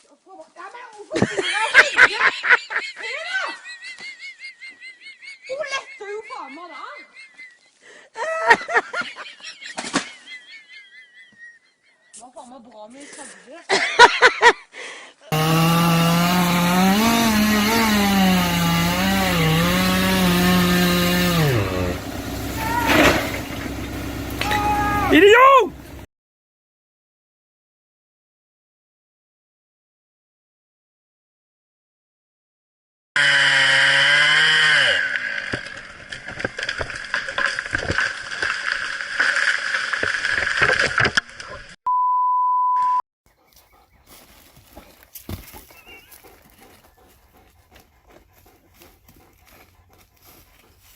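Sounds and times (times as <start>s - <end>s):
chainsaw cutting wood: 15.3s - 26.1s, 33.2s - 41.6s
sharp cracks and knocks: 22.5s - 24.6s, 35.5s - 41.8s
censor beep tone: 41.9s - 43.0s.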